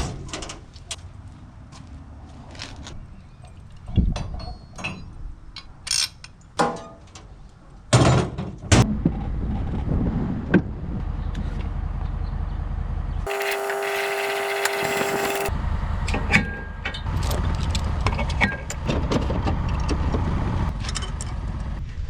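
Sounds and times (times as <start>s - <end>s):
engine starting and running: 13.3s - 15.5s.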